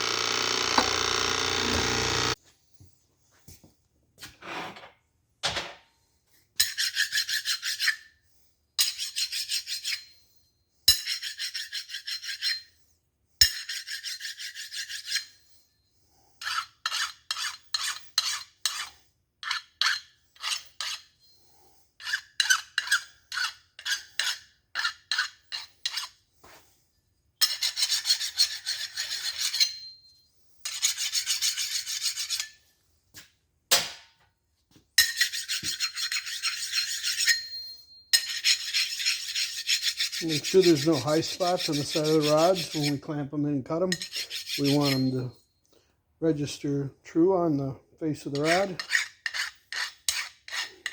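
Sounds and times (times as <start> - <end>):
file rasping on steel: 0.0 - 2.4, 6.6 - 8.1, 8.8 - 10.1, 10.9 - 12.7, 13.4 - 15.4, 16.4 - 21.2, 22.0 - 26.2, 27.4 - 29.8, 30.6 - 32.6, 35.0 - 37.5, 38.2 - 43.2, 43.9 - 45.3, 48.2 - 50.9.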